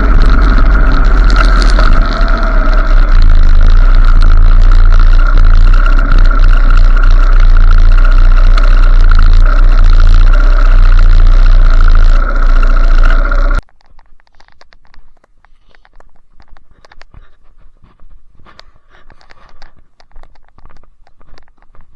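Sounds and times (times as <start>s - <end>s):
motorcycle engine running: 0.0s - 13.6s.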